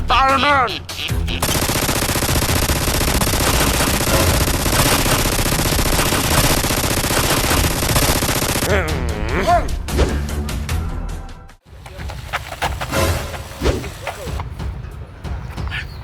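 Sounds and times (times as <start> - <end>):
music: 0.0 - 5.8, 8.7 - 16.0
rapid automatic gunfire: 1.4 - 8.7.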